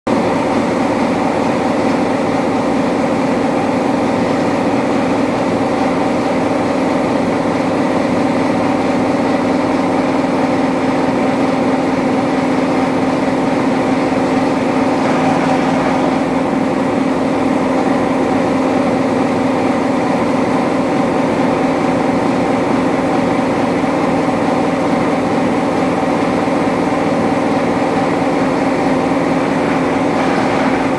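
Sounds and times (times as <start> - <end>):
machine humming: 13.5 - 17.9, 28.2 - 30.9.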